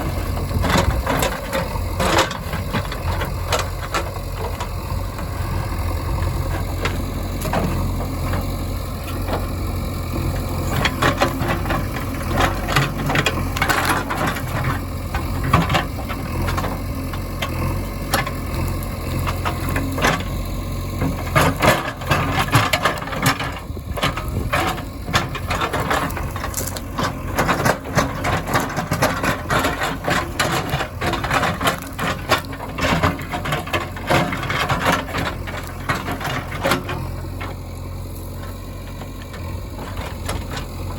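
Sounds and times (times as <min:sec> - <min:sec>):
diesel engine running: 0:00.0 - 0:40.9
irregular clatters and knocks: 0:06.2 - 0:18.4, 0:21.0 - 0:37.6.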